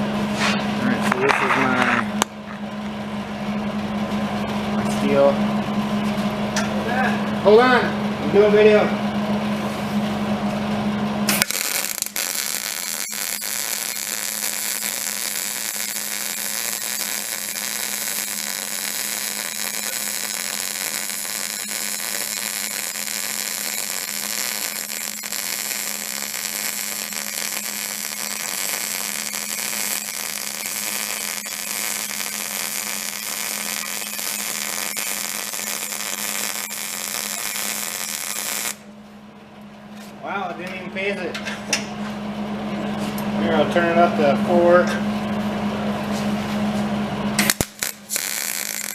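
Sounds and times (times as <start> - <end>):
steady hum: 0.0 - 48.9
welding arc crackling sizzle: 11.3 - 38.9, 47.4 - 48.9.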